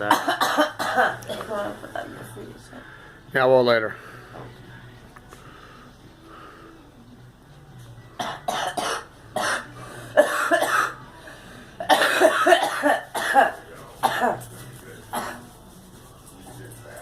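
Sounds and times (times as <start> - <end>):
girl coughing: 0.0 - 1.7, 8.2 - 11.0, 11.8 - 14.4.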